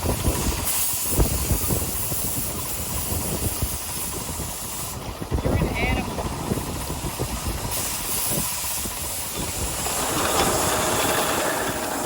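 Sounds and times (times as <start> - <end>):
steam hissing: 0.0 - 12.0.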